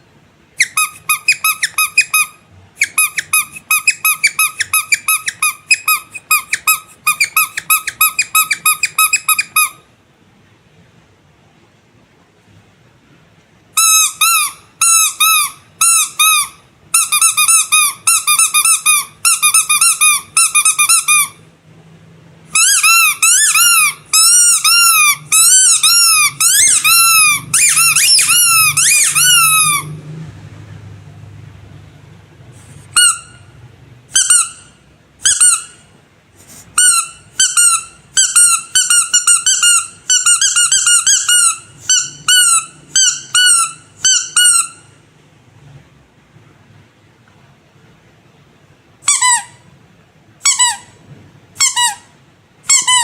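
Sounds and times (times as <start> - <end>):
rubber squeaky toys squeaking: 0.6 - 9.8, 13.8 - 21.4, 22.5 - 30.0, 32.8 - 33.4, 34.1 - 35.8, 36.6 - 45.0, 49.0 - 49.6, 50.4 - 51.0, 51.6 - 53.0.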